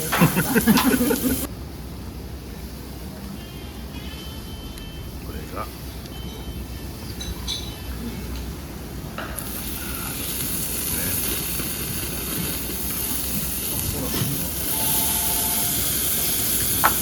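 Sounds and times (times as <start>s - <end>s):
meat sizzling on a grill: 0.0s - 1.5s, 9.2s - 17.0s.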